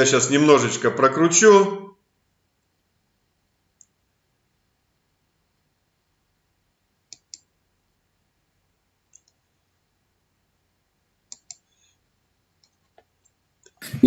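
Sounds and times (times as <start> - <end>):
computer mouse clicks: 7.1 - 7.5, 9.1 - 9.5, 11.3 - 12.0, 12.6 - 13.4.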